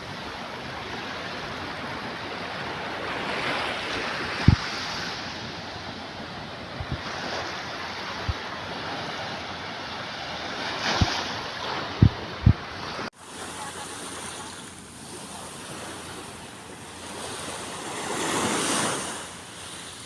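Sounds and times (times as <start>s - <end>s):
ocean surf washing: 0.0s - 20.0s
low thumps on microphone: 12.0s - 12.6s.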